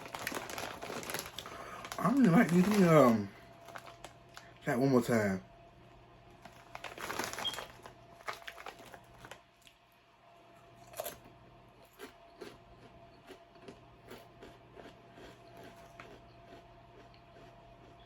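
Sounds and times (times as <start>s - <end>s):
chewing crisp chips: 0.0s - 4.6s, 6.4s - 9.9s, 10.6s - 18.0s
faint steady hum: 0.0s - 18.0s.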